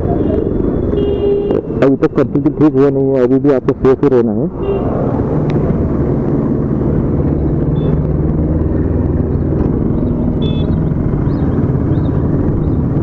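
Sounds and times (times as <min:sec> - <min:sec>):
wind and road noise: 0:00.0 - 0:13.0
motorcycle engine drone: 0:04.5 - 0:13.0.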